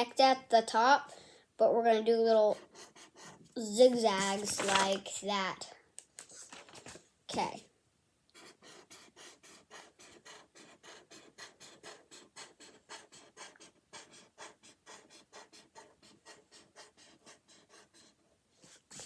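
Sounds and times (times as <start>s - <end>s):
marker scratching on paper: 2.5s - 5.1s, 8.4s - 19.0s.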